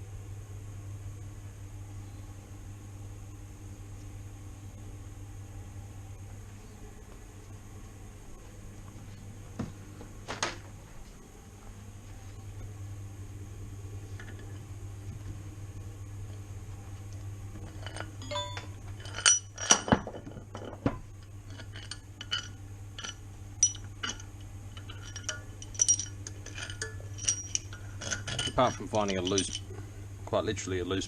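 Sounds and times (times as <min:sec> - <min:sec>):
steady low hum: 0:00.0 - 0:31.0
metal tools clinking: 0:17.6 - 0:20.8, 0:21.5 - 0:29.7.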